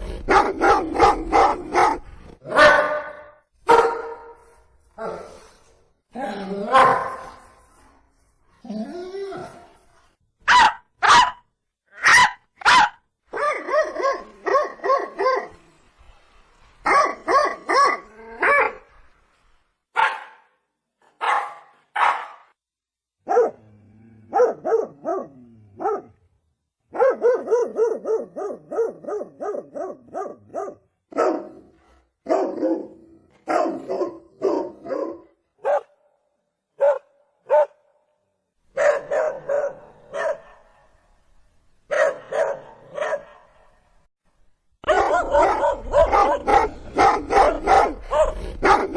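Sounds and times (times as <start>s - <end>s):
dog barking: 0.3s - 4.4s, 6.7s - 7.4s, 10.5s - 11.4s, 12.0s - 15.5s, 16.8s - 18.8s, 20.0s - 20.5s, 21.2s - 22.5s, 23.2s - 23.6s, 24.3s - 26.2s, 26.9s - 36.0s, 36.8s - 37.9s, 38.7s - 40.9s, 41.9s - 43.7s, 44.8s - 48.9s.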